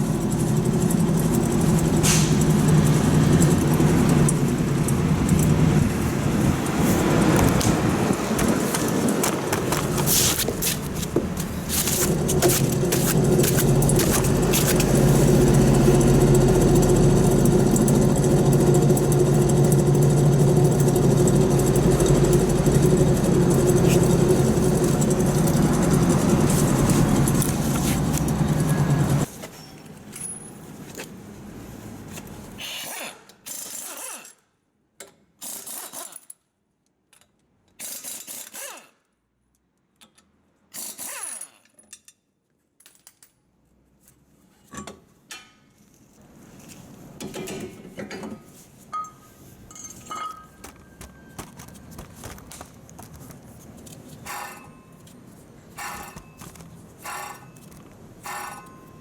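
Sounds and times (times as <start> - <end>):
wheel bearing roar: 0.0 - 29.3
road noise: 0.0 - 29.4
workshop tool bursts: 54.2 - 54.8, 55.7 - 59.0.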